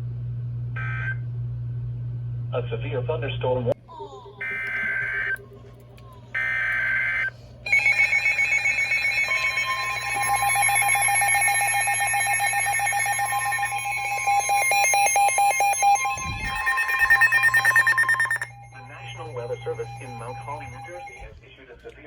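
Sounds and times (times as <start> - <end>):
rapid alarm beeping: 4.4 - 5.4, 6.4 - 21.4
warbling digital header tones: 4.4 - 5.4, 6.4 - 21.3
steady alert tone: 7.7 - 21.2.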